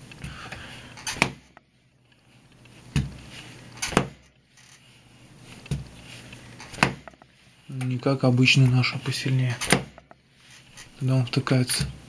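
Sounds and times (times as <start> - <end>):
knife striking wooden floor: 1.1 - 1.6, 3.8 - 4.3, 6.7 - 7.2, 9.6 - 10.1.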